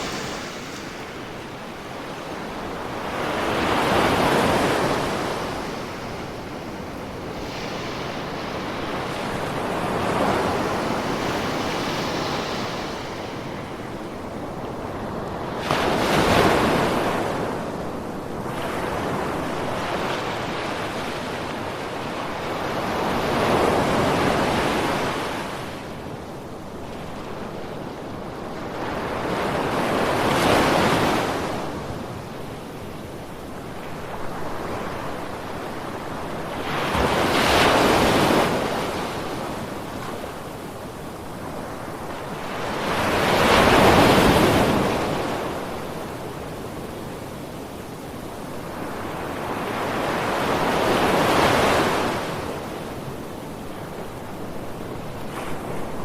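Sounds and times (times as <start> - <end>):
ocean waves breaking: 0.0 - 14.8.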